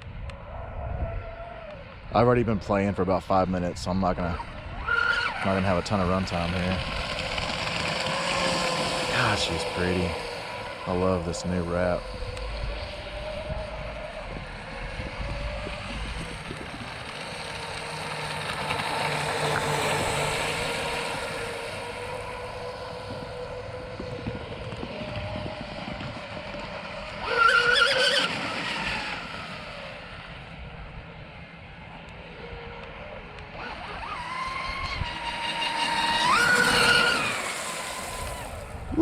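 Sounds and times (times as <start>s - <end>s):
wind on microphone: 0.0s - 27.3s, 33.6s - 39.0s
electric boat motors whining: 0.0s - 39.0s.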